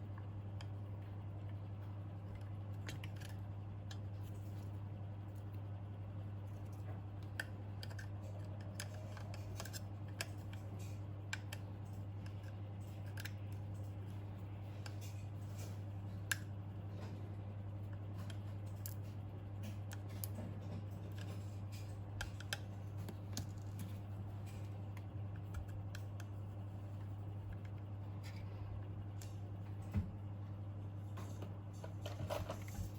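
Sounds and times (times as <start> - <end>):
small clicks and snips: 6.7 - 14.0.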